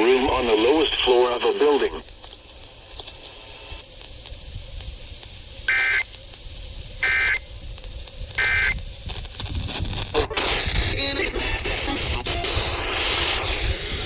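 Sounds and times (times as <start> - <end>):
rush of radio static: 0.0 - 2.2, 8.4 - 8.8, 9.7 - 14.0
radio hiss: 0.0 - 14.0
digital data screech bursts: 5.7 - 6.0, 7.0 - 7.4, 8.4 - 8.8, 10.1 - 14.0.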